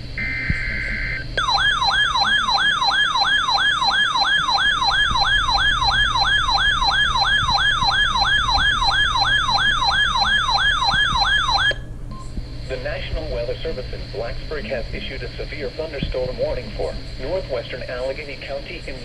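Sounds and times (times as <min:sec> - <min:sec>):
electronic alert siren: 0:00.2 - 0:11.8.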